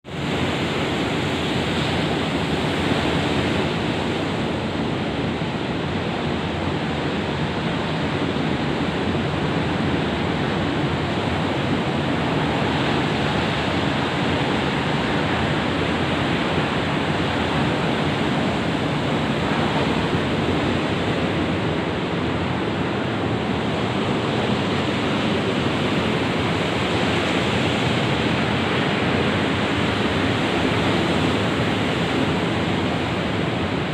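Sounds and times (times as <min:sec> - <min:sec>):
ocean waves breaking on shore: 0:00.1 - 0:33.9.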